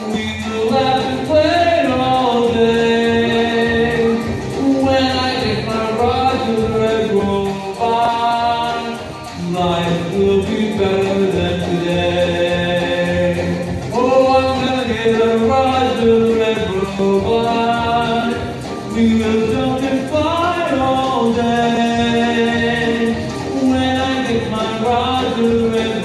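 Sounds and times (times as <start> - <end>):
backing music: 0.0 - 26.0
person singing long notes: 0.0 - 26.0.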